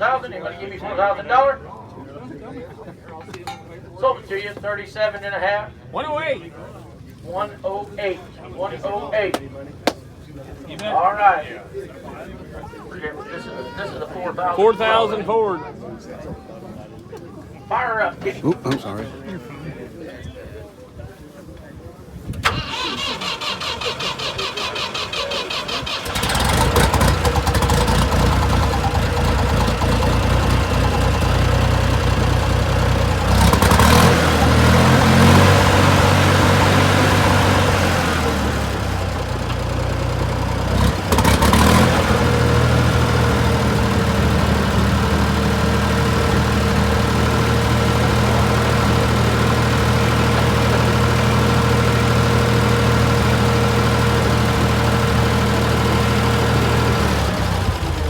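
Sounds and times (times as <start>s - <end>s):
tractor engine running: 22.4s - 58.0s
tractor starter cranking: 22.4s - 58.0s.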